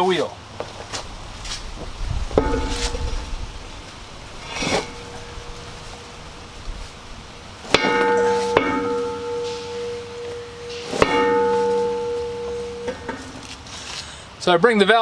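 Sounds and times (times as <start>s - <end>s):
knocks on steel wheel rim: 7.7s - 13.4s.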